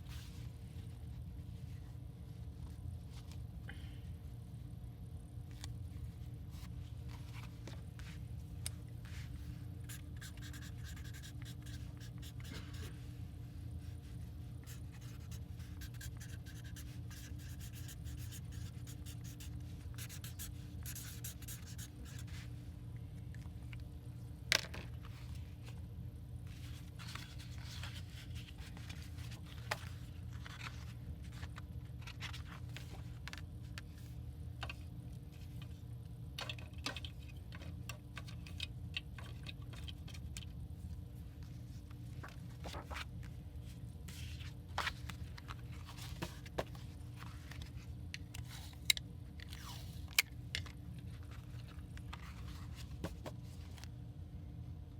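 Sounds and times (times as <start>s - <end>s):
steady low hum: 0.0s - 54.9s
paper rustling and scraping: 26.5s - 34.1s, 41.4s - 53.9s.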